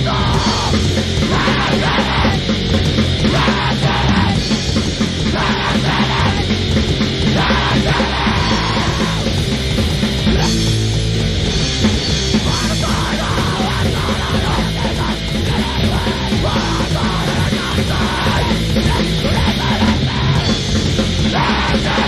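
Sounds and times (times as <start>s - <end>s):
loud grindcore music: 0.0s - 22.0s
yelled vocals: 0.0s - 22.0s.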